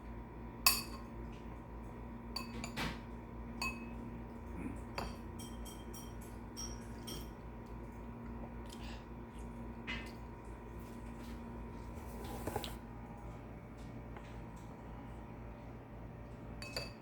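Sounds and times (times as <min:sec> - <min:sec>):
spoon clinking against a dish: 0:00.6 - 0:01.1, 0:02.3 - 0:02.8, 0:03.6 - 0:04.0, 0:04.9 - 0:07.4, 0:16.6 - 0:17.0.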